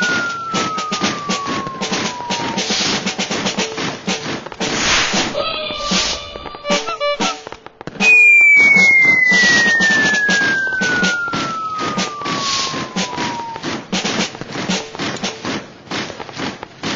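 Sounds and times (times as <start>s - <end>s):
whistle tone gliding down: 0.0s - 3.2s, 8.0s - 13.9s
noisy drum-like hits: 0.0s - 15.7s.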